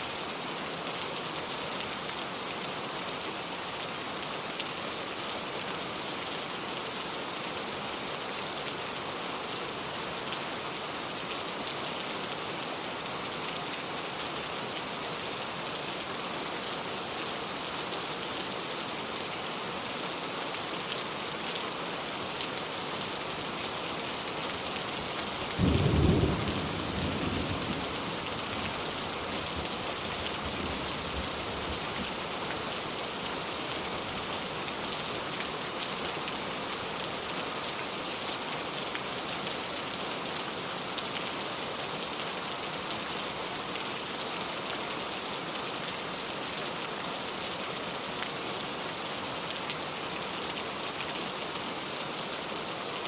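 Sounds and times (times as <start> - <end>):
pouring rain: 0.0 - 53.0
deep thunderclap rumbling: 25.6 - 28.0.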